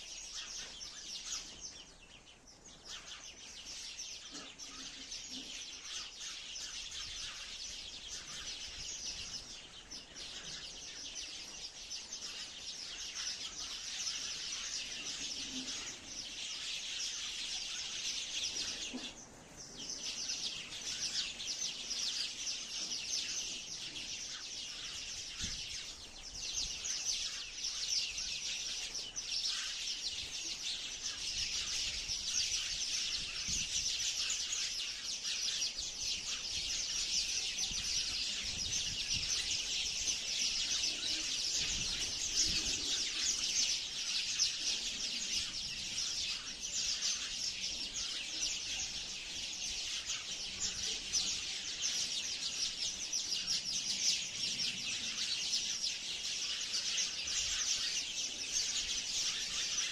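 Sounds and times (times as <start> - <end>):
sparrows chirping: 0.0 - 59.9.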